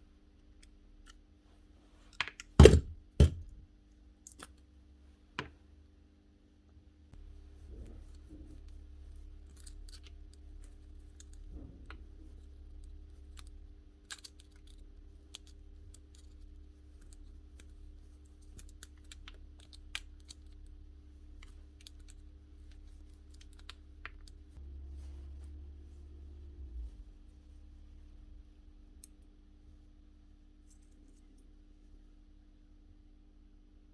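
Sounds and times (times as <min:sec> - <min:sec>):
steady low hum: 0:14.7 - 0:33.9.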